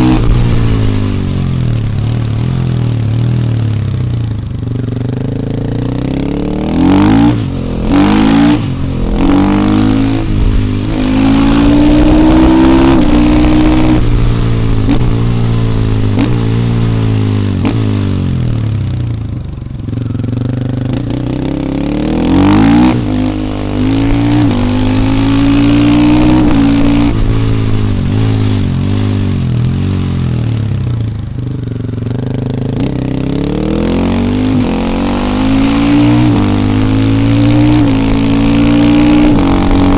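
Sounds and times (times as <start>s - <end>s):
motorcycle engine revving: 0.0s - 39.9s
loud engine blasts: 6.4s - 19.7s, 33.8s - 39.9s.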